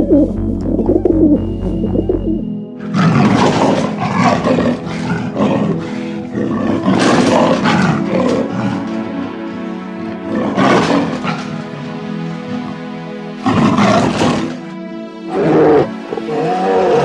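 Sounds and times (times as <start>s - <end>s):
background music: 0.0s - 17.0s
leopard roaring: 2.8s - 11.9s, 13.4s - 14.6s, 15.3s - 17.0s.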